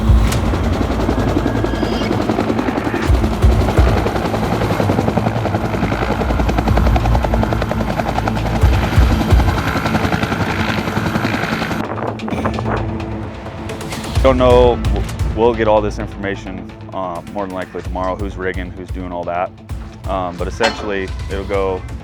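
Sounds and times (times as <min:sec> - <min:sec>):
helicopter rotor chopping: 0:00.0 - 0:11.9.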